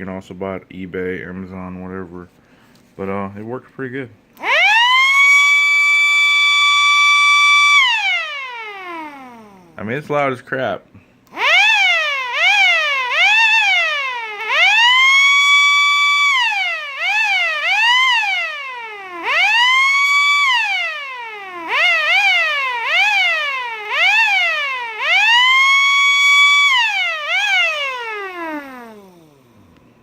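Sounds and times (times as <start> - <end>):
car siren horn whooping: 11.4 - 29.1.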